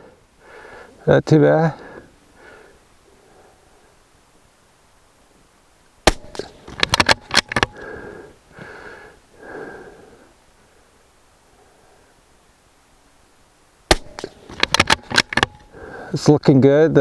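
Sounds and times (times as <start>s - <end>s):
rifle shot: 6.0s - 8.0s, 13.9s - 15.8s
rifle bolt clicks: 6.1s - 8.0s, 13.9s - 15.8s.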